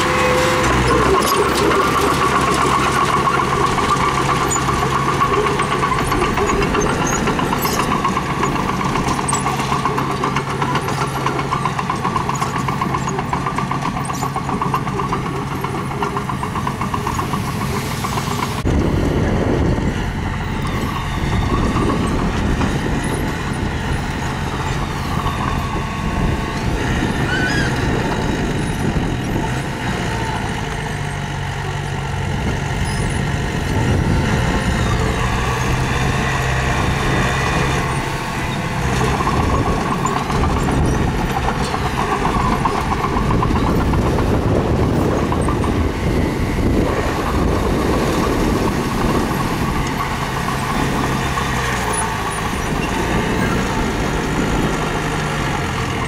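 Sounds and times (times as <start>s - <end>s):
rough clatter of machinery: 0.0s - 18.7s, 32.4s - 56.0s
bulldozer diesel engine throttling: 0.0s - 56.0s.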